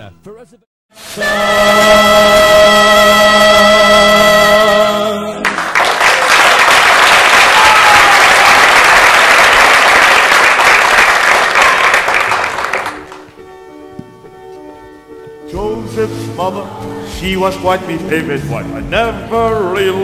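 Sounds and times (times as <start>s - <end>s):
soft music: 0.2s - 5.6s, 12.2s - 20.0s
audience applause: 5.4s - 13.3s.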